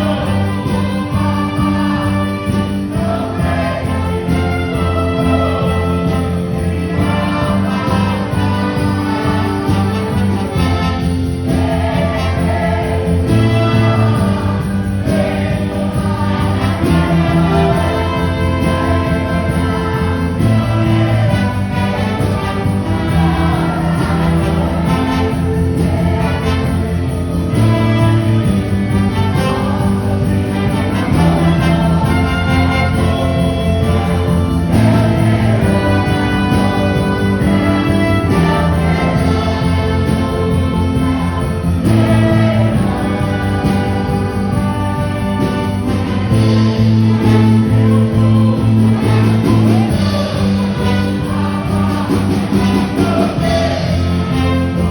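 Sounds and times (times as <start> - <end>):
gospel band music: 0.0 - 54.9
voices singing: 0.0 - 54.9.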